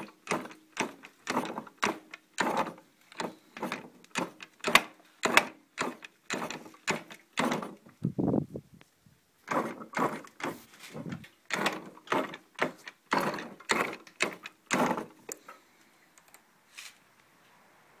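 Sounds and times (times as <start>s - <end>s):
motorcycle kickstarter clacking: 0.0s - 8.0s, 9.5s - 15.5s.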